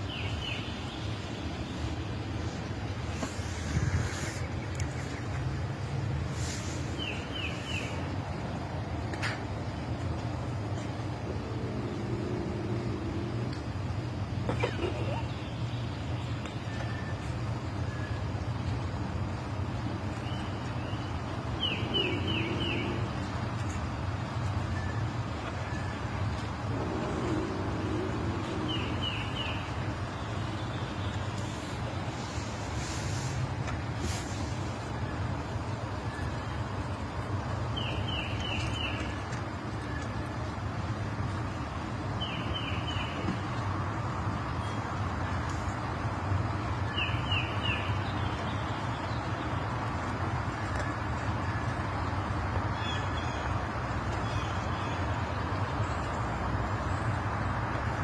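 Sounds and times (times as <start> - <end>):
steady low rumble: 0.0 - 42.5
low hum: 9.8 - 37.8.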